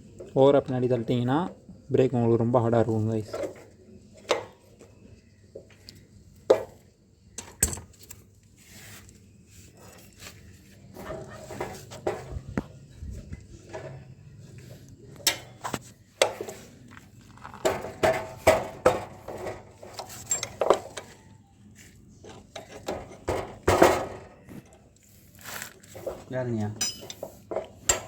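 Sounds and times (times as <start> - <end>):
tools and metal parts clinking: 7.4 - 8.3, 15.1 - 21.5, 22.2 - 24.8, 25.6 - 28.0.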